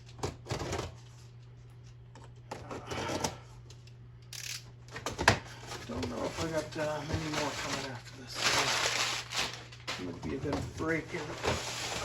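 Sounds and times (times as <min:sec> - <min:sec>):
cardboard box rustling and scraping: 0:10.8 - 0:12.0.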